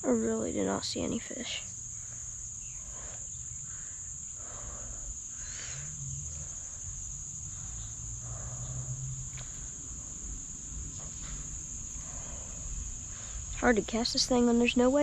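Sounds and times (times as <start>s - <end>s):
crickets trilling: 0.0s - 15.0s
low rumble: 4.4s - 14.8s.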